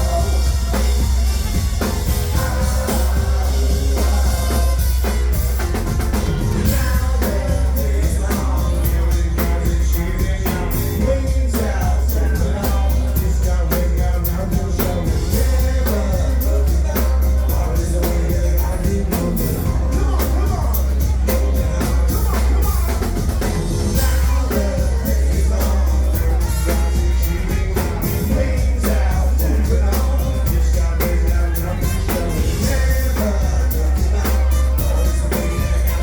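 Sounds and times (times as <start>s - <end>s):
drum kit steady beat: 0.0s - 36.0s
heavy bass: 0.0s - 36.0s
live band playing: 0.0s - 36.0s.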